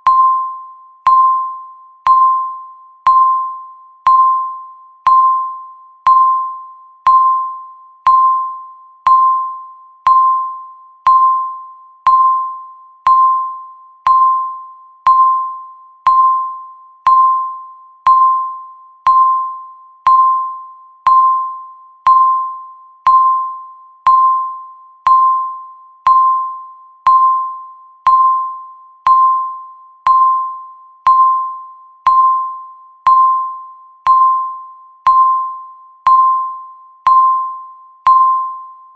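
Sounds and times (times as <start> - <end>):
timer beeps: 0.0 - 38.9.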